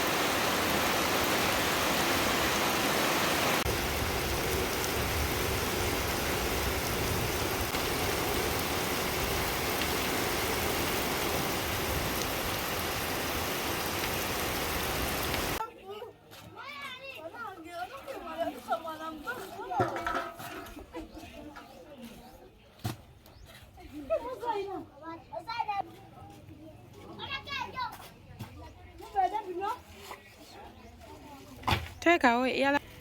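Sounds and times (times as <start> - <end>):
heavy rain hissing: 0.0 - 15.6.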